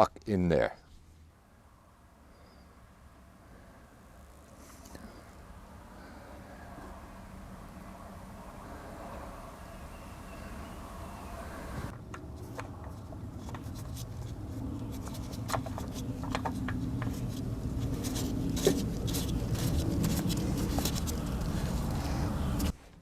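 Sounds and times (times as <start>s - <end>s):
steady low rumble: 5.2s - 22.8s
oil filter clicks and scrapes: 12.2s - 22.8s.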